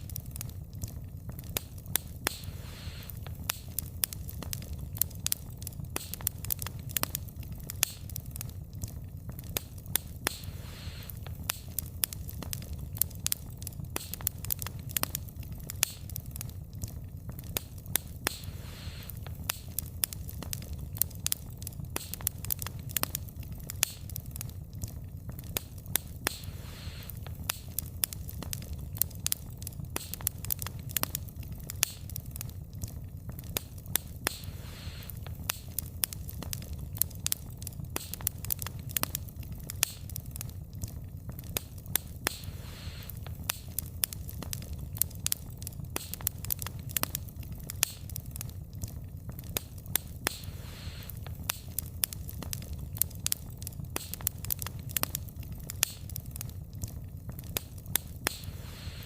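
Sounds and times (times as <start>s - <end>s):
low rumble of flames: 0.0s - 59.0s
wood crackling and popping: 0.0s - 59.0s
brief hiss from fire: 2.2s - 3.8s, 10.2s - 11.8s, 18.2s - 19.8s, 26.2s - 27.8s, 34.2s - 35.8s, 42.2s - 43.8s, 50.3s - 51.8s, 58.2s - 59.0s.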